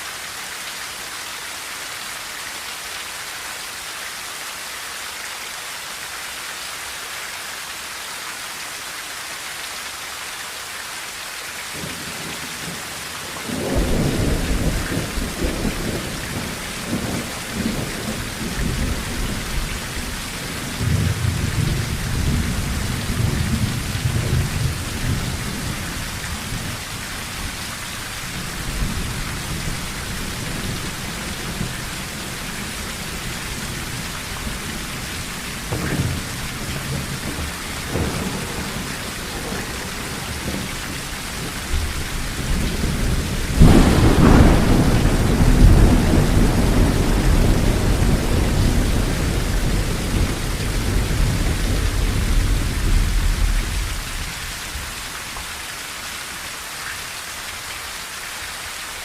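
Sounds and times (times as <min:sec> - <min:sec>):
rain on a tin roof: 0:00.0 - 0:59.0
rolling thunder: 0:13.5 - 0:27.6, 0:28.2 - 0:54.3.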